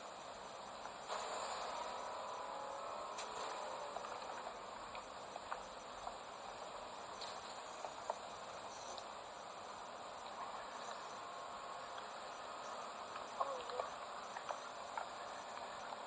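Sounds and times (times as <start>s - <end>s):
insects chirring: 0.0s - 16.0s
faint clicks: 10.1s - 16.0s.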